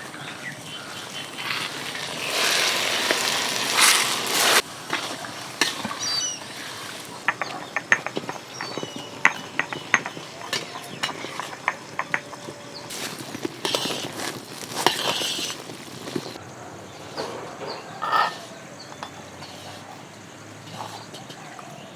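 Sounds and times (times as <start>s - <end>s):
water pouring into pan: 1.5s - 7.4s.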